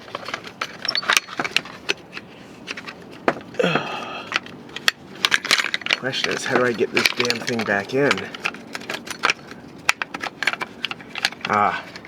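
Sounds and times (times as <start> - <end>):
metal clicks and knocks: 0.0 - 3.5, 4.3 - 12.0
person grunting: 3.6 - 4.3.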